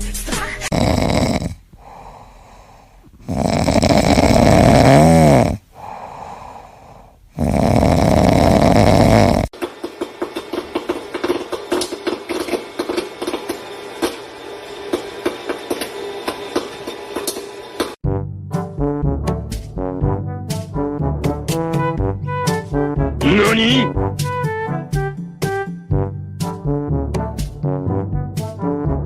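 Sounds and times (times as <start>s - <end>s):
loud rasping snoring: 0.6s - 9.6s.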